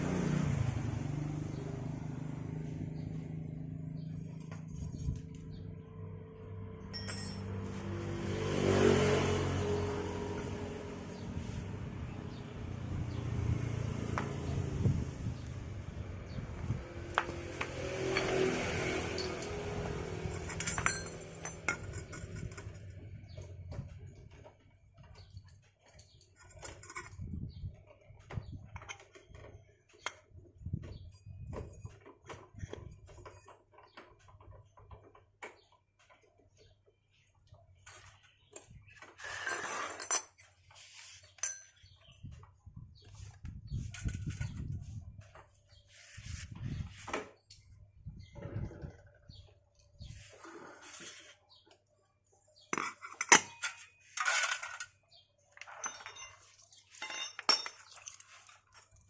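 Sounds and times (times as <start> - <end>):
metallic clinks of hand tools: 7.0 - 7.6, 20.3 - 22.7
metal tools clinking: 7.0 - 7.7, 19.0 - 23.0, 38.6 - 42.0, 52.8 - 55.0, 55.6 - 59.0
scraping rattle: 19.0 - 24.5, 38.9 - 42.0.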